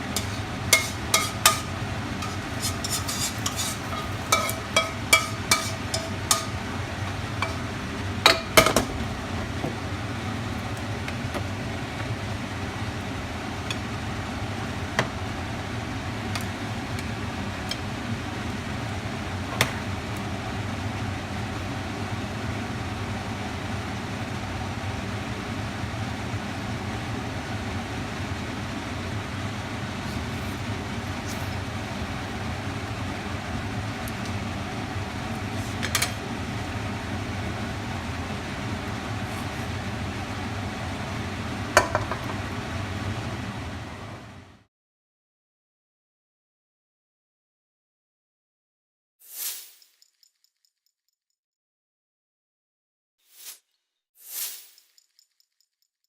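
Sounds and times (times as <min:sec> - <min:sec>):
fan hum: 0:00.0 - 0:44.7
utensils clinking: 0:00.1 - 0:06.6, 0:07.4 - 0:07.7.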